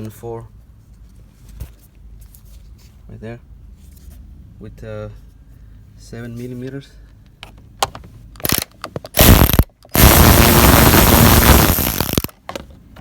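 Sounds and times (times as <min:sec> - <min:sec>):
ratchet clicking: 0:08.4 - 0:12.3.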